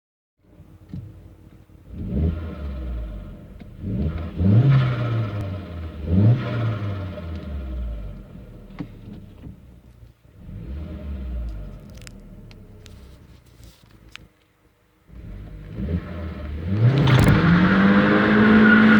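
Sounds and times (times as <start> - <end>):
car engine revving: 15.2 - 18.9
turbo flutter: 16.9 - 17.6.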